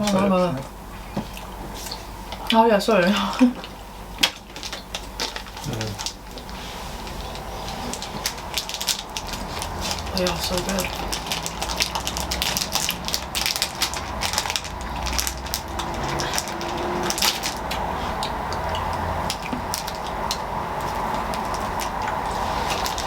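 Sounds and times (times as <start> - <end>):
sweet wrappers crinkling: 3.4 - 23.0.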